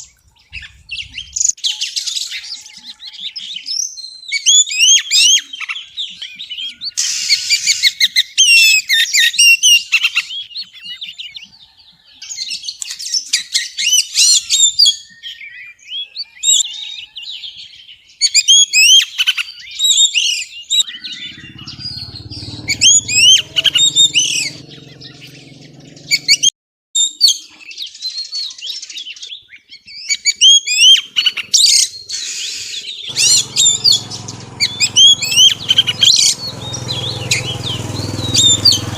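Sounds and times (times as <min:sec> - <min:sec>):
bird singing whistles and chatter: 0:12.2 - 0:38.9.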